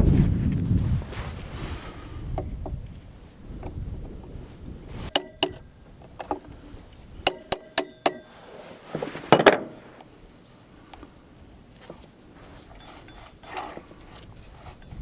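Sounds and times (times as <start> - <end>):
metal scraping rattle: 5.0 - 6.4, 7.3 - 9.5
metal parts clinking: 5.1 - 6.4, 7.3 - 8.4.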